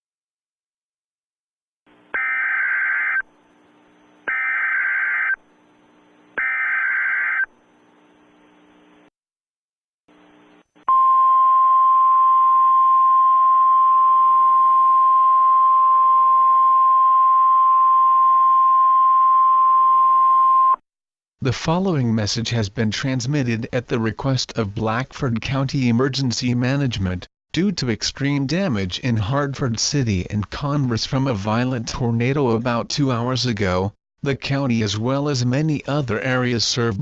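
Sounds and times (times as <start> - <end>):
steady warning alarm tone: 4.3 - 5.4, 6.4 - 7.5.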